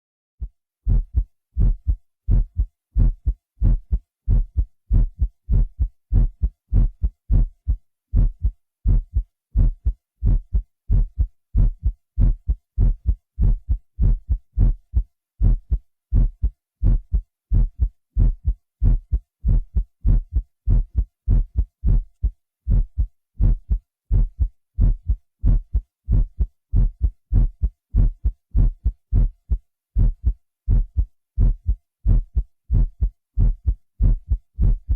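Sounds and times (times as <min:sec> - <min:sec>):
heartbeat thumps: 0:00.4 - 0:34.9.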